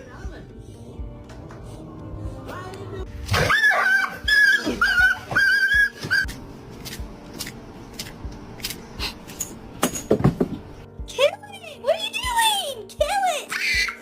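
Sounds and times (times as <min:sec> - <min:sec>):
pet whining cries: 0:03.3 - 0:06.3.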